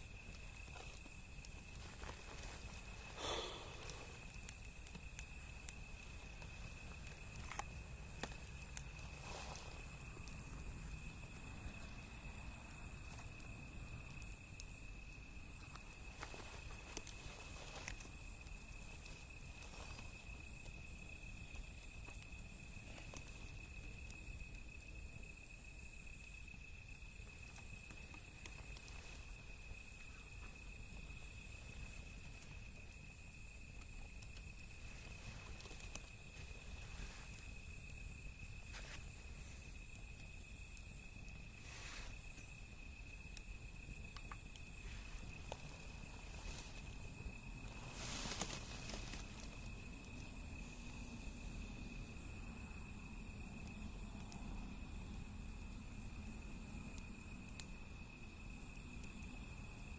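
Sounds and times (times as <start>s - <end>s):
bonfire crackling and popping: 0.0s - 59.9s.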